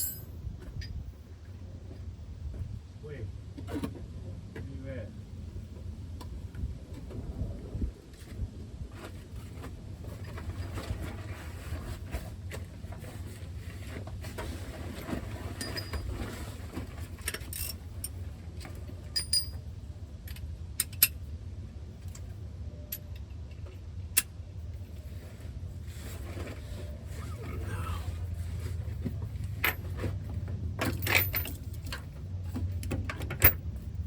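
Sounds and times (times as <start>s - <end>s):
metal tools clinking on metal: 0.0s - 1.0s, 19.1s - 19.6s, 30.8s - 32.0s.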